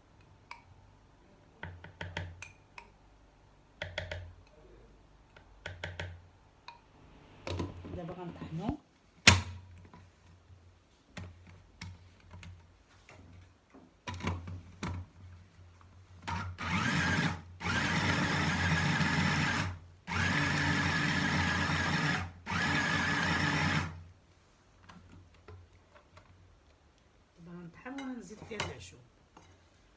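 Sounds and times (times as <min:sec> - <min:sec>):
kitchen blender grinding: 0:16.3 - 0:24.0.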